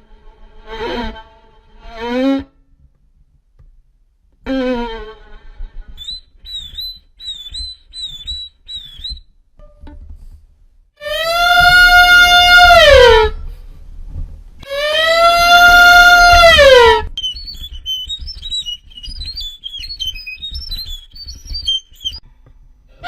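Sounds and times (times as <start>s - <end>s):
long bowed violin notes: 0.0s - 2.6s, 4.4s - 6.5s, 11.0s - 13.6s, 14.6s - 17.2s
squeaky violin notes: 0.0s - 2.6s, 4.4s - 10.1s, 11.0s - 13.4s, 14.6s - 22.2s.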